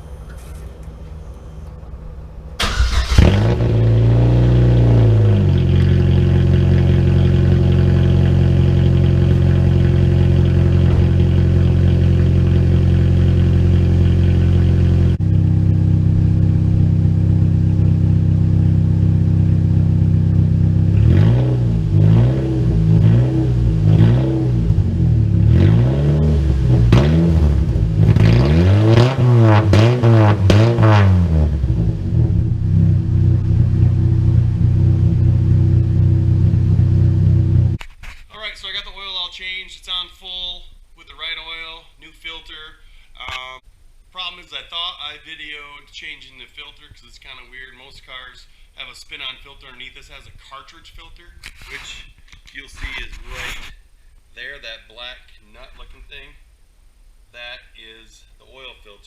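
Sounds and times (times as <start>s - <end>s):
car engine cranking and starting: 0.0s - 37.8s
car engine idling: 0.0s - 37.8s
car engine revving: 0.0s - 37.8s.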